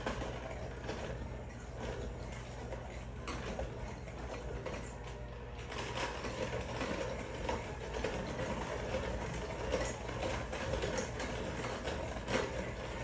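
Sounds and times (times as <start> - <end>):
electric mixer running: 0.0 - 13.0.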